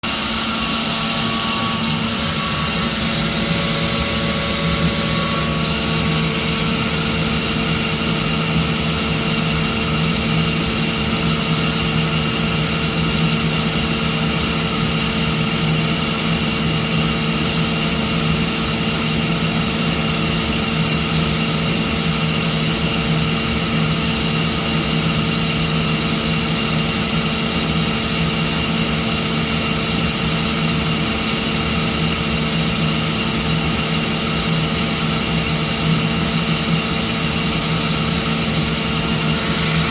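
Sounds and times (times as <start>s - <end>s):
air compressor humming: 0.0s - 16.3s, 22.6s - 39.9s
high whining tones: 0.1s - 8.5s.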